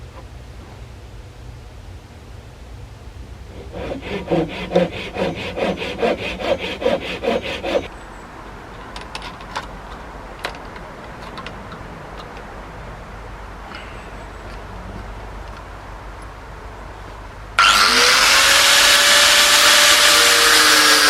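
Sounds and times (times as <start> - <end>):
hand saw cutting wood: 3.5 - 7.9, 17.6 - 21.0.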